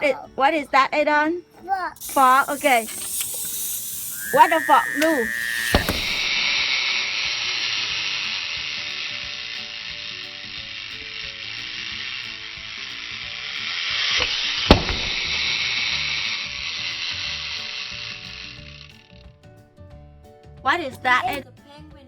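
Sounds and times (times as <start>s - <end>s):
wind-up toy mechanism whirring: 1.9s - 19.2s
sharp click: 2.0s - 6.4s.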